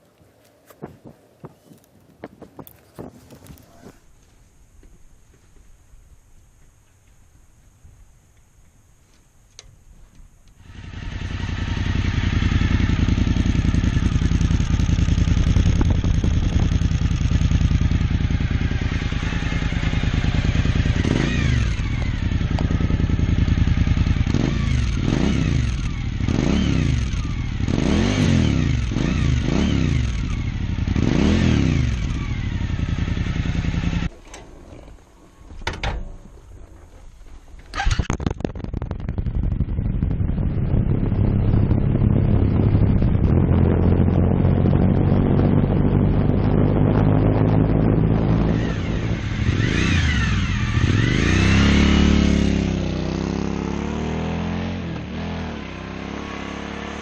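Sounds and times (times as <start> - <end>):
motorcycle engine revving: 10.6 - 34.1, 37.7 - 57.0.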